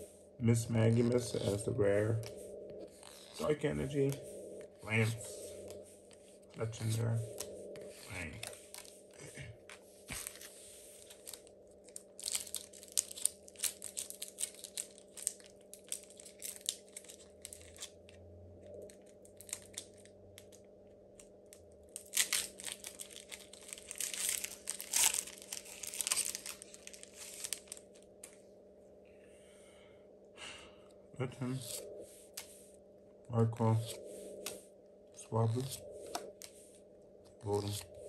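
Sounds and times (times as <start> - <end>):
faint hum: 0.0 - 38.0
foil wrapper crinkling and tearing: 10.1 - 18.0, 18.9 - 20.6, 21.9 - 28.0.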